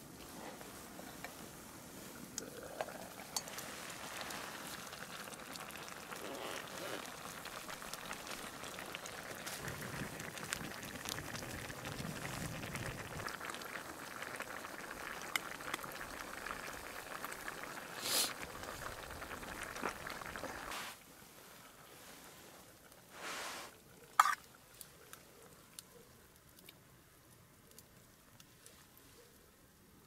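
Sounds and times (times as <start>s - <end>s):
soup bubbling in a pot: 2.1s - 28.5s
brief hiss: 18.0s - 18.4s, 20.7s - 21.0s, 23.1s - 23.8s.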